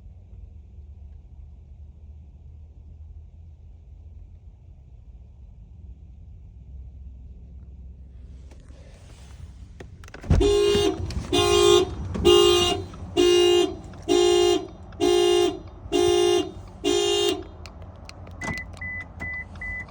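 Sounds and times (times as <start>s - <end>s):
car alarm horn honks: 10.2s - 17.7s.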